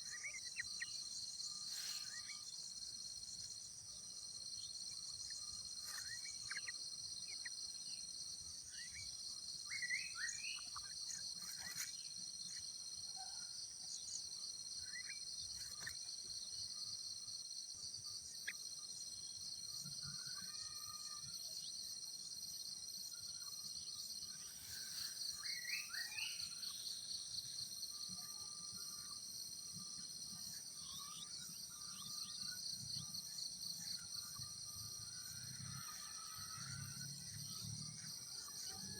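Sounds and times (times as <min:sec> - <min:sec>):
insects droning: 0:00.0 - 0:38.9
bird chirps: 0:08.8 - 0:12.1, 0:24.3 - 0:27.5.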